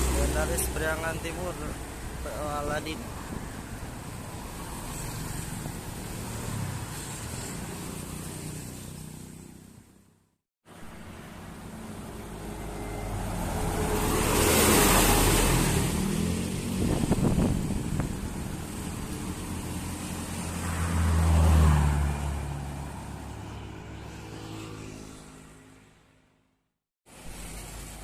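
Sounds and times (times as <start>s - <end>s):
bus engine: 0.0s - 7.9s, 10.8s - 24.3s
tyre noise and air rush: 14.0s - 20.8s.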